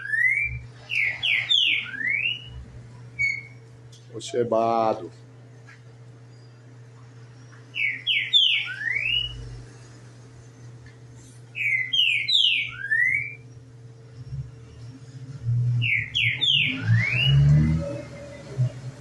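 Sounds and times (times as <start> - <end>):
bird singing whistled notes: 0.0 - 2.6, 3.2 - 3.6, 7.3 - 9.6, 11.6 - 13.6, 15.7 - 17.8
steady low hum: 0.0 - 19.0.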